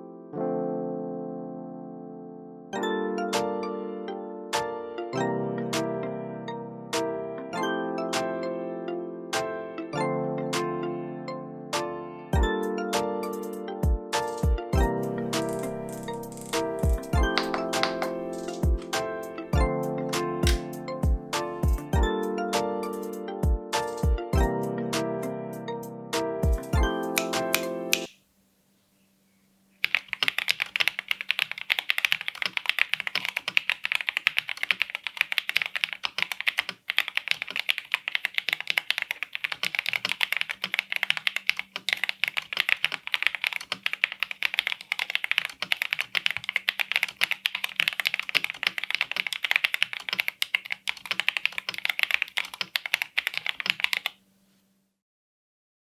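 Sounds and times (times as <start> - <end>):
mechanical keyboard key clicks: 15.4 - 18.6, 20.4 - 20.7, 27.1 - 28.1, 29.8 - 54.1.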